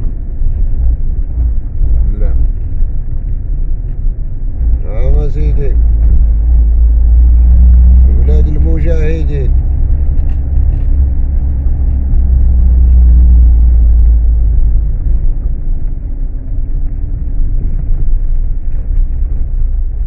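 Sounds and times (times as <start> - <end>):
car engine rumbling: 0.0 - 20.0.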